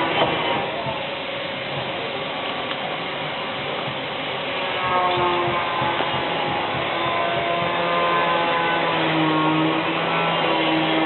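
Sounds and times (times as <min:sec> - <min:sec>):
steady rushing noise: 0:00.0 - 0:11.0.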